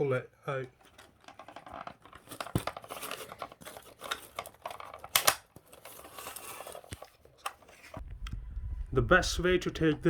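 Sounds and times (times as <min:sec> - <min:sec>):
plastic parts scraping and rattling: 0:00.6 - 0:08.0
plastic snap: 0:05.0 - 0:05.6.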